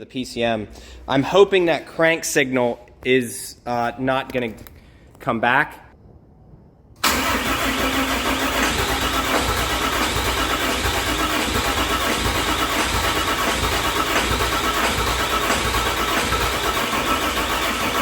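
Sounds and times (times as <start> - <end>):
diesel engine cranking on starter: 7.0 - 18.0.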